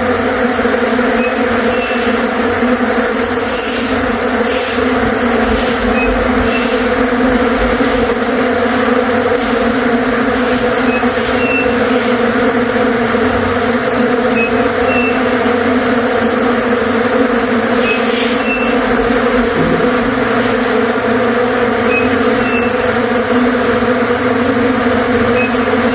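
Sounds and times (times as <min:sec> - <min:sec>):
bees buzzing: 0:00.0 - 0:25.9
bird chirping: 0:01.2 - 0:02.2, 0:09.9 - 0:11.8, 0:14.4 - 0:18.9, 0:21.9 - 0:22.8, 0:25.4 - 0:25.7.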